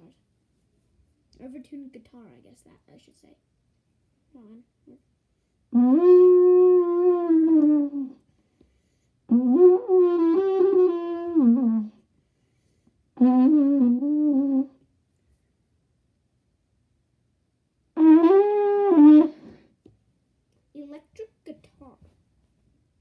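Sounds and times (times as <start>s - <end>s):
wavering trumpet notes: 5.7s - 8.2s, 9.3s - 12.0s, 13.2s - 14.8s, 18.0s - 19.5s.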